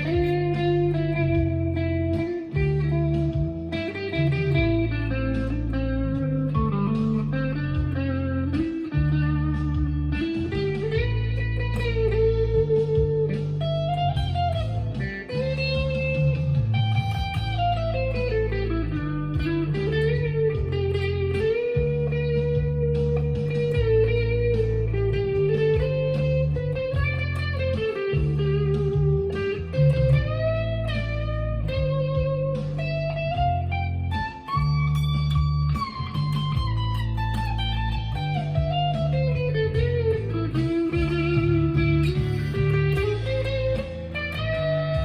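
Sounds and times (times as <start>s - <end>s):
backing with bass notes: 0.0s - 45.0s
electric guitar blues lead: 0.0s - 45.0s.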